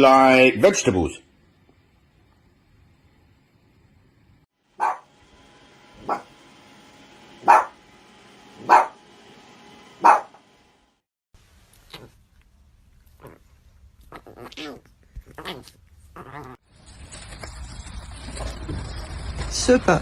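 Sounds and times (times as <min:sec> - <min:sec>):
dog barking: 0:04.8 - 0:05.1, 0:06.0 - 0:06.3, 0:07.4 - 0:07.8, 0:08.6 - 0:09.0, 0:10.0 - 0:10.4.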